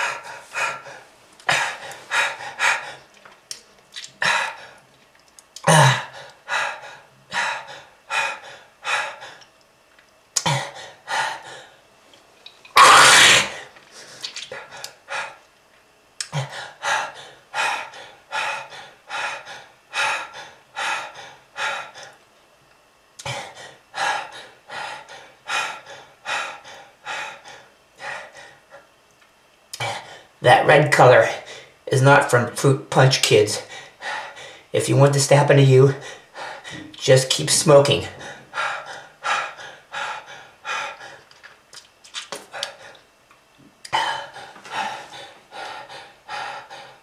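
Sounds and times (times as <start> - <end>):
person coughing: 5.6 - 6.1, 12.8 - 13.6.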